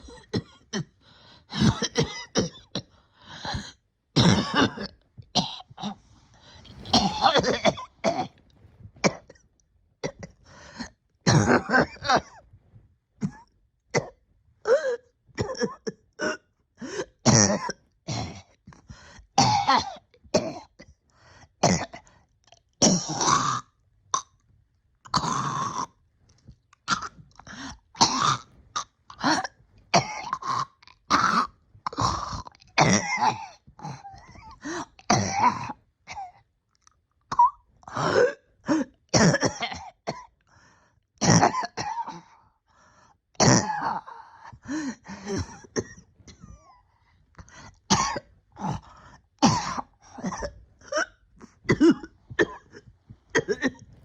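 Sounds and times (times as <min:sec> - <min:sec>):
person coughing: 0:00.0 - 0:08.4, 0:11.3 - 0:12.4, 0:13.2 - 0:18.5, 0:19.4 - 0:20.7, 0:26.9 - 0:36.4, 0:37.4 - 0:40.3, 0:41.2 - 0:42.4, 0:43.4 - 0:54.0
throat clearing: 0:00.0 - 0:09.3, 0:44.7 - 0:54.0.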